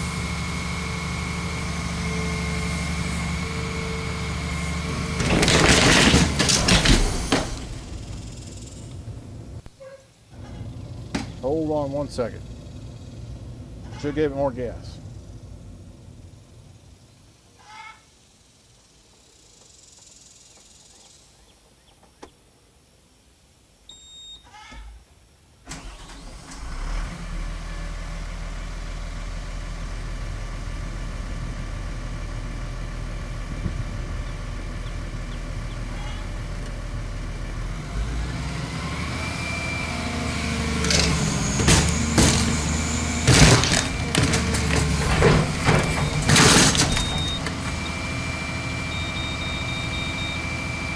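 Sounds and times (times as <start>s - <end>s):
diesel engine starting and running: 0.0s - 9.7s, 10.3s - 17.4s, 25.6s - 50.9s
excavator clanks and knocks: 4.9s - 8.2s, 40.8s - 48.1s.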